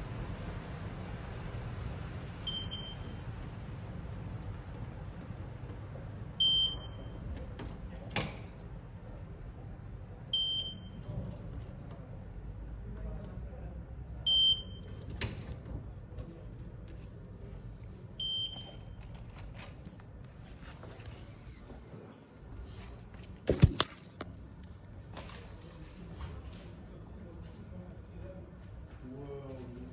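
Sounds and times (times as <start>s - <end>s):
high-pitched fire alarm beep: 2.5s - 3.2s, 6.4s - 7.2s, 10.4s - 11.0s, 14.3s - 14.9s, 18.2s - 18.9s.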